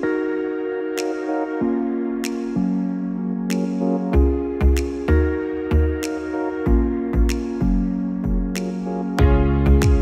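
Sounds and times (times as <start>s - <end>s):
deep bass thumps: 9.2s - 10.0s.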